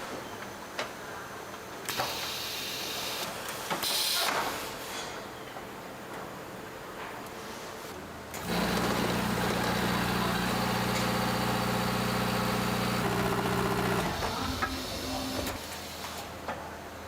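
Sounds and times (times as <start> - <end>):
machine motor humming: 8.4 - 15.6.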